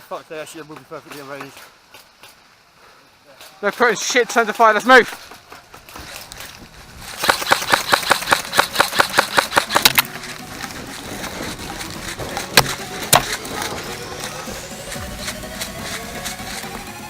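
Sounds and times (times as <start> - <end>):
airsoft gun shots: 7.2 - 10.1.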